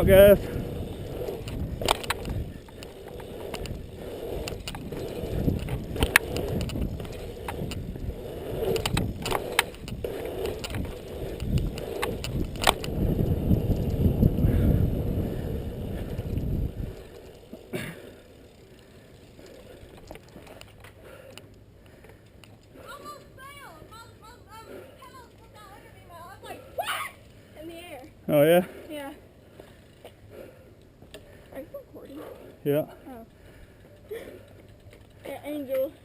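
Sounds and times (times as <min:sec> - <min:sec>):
wind and tyre rumble: 0:00.0 - 0:24.3
bike clicks and rattles: 0:00.0 - 0:36.0.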